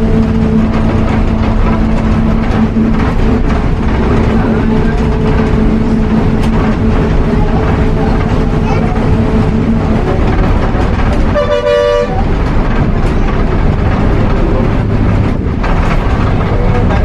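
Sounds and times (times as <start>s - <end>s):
bus engine and road rumble: 0.0s - 17.0s
vehicle horn toot: 11.3s - 12.2s.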